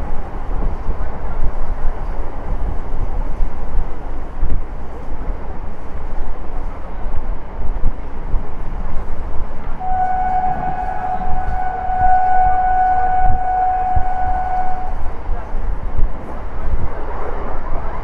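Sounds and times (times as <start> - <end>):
train wheels rumbling on rail: 0.0 - 18.0
train horn: 9.8 - 15.2.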